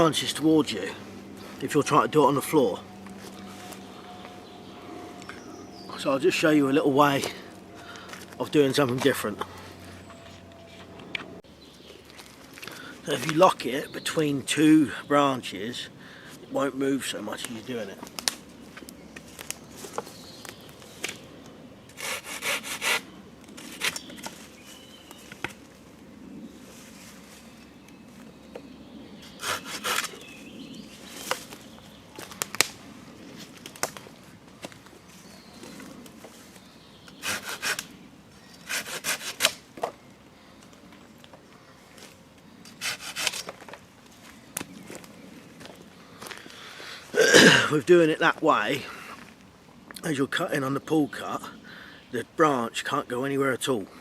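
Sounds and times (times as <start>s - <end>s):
handsaw rasping through branch: 21.9s - 24.0s, 29.2s - 30.2s, 37.2s - 37.9s, 38.6s - 39.6s, 42.7s - 43.5s.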